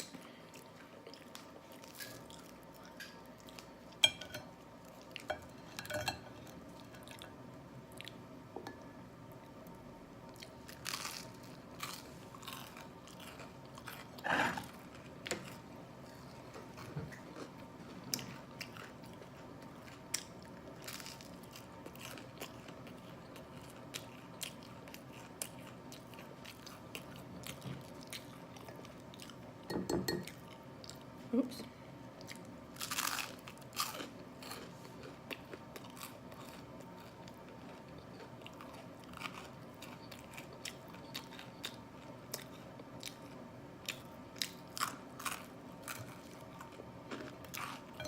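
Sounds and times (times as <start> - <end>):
person chewing: 32.2 - 48.0.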